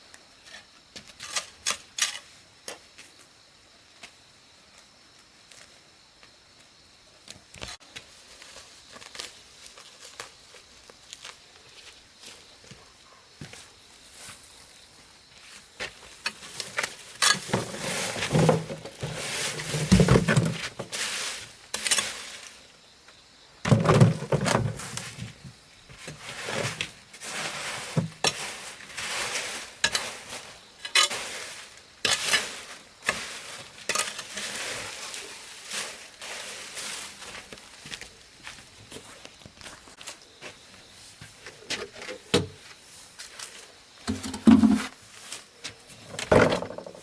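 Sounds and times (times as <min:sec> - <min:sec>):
objects knocking and clattering: 0:17.2 - 0:20.9, 0:23.7 - 0:25.4, 0:44.1 - 0:45.0, 0:46.1 - 0:47.0.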